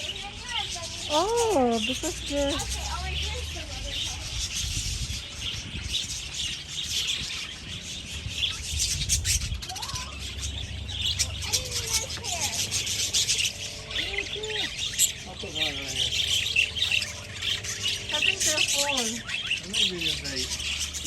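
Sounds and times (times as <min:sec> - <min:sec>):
budgerigars chattering: 0:00.0 - 0:21.0.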